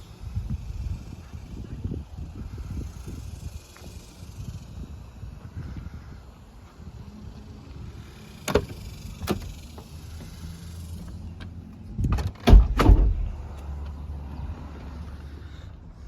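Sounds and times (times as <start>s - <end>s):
door latch clicks: 12.0s - 13.6s
heavy door thumps: 12.1s - 13.6s.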